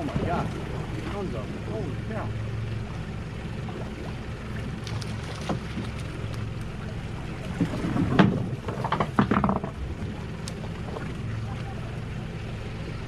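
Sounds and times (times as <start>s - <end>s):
boat diesel engine idling: 0.0s - 13.0s
wind: 0.0s - 13.0s
knocks and rustles: 7.6s - 9.8s.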